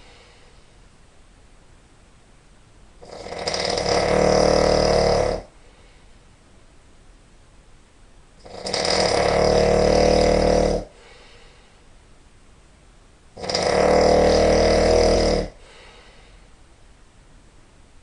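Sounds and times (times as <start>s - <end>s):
person snoring loudly: 3.0s - 5.5s, 8.4s - 11.2s, 13.4s - 15.9s.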